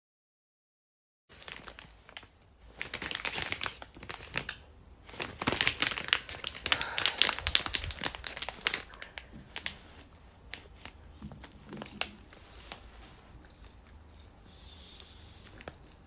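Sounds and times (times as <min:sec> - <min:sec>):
plastic wrapper crinkling: 0:01.3 - 0:14.0.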